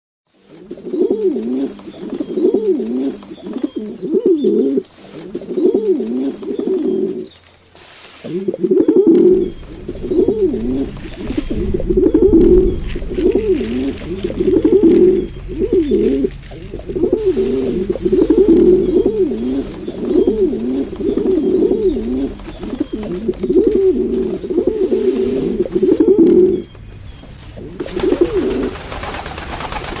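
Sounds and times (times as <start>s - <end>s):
pigeon cooing: 0.4s - 7.4s, 8.2s - 30.0s
even hiss: 4.7s - 26.6s.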